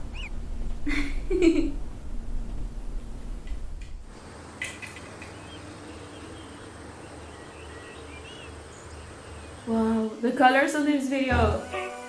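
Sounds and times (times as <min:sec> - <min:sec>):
faint bird chirps: 0:00.0 - 0:00.4
steady low hum: 0:00.0 - 0:04.6.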